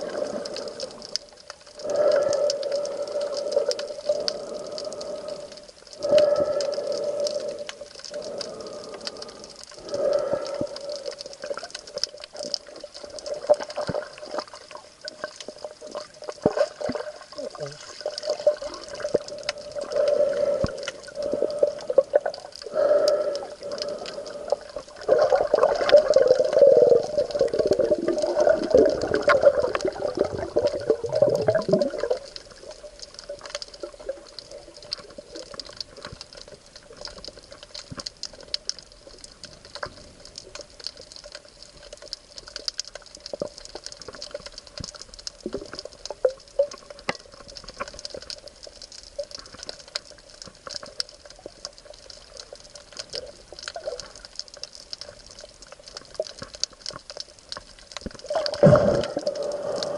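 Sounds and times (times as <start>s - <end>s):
faint steady hum: 0.0s - 59.9s
small crackling ticks: 0.0s - 59.9s
water rushing and bubbling: 0.0s - 59.9s.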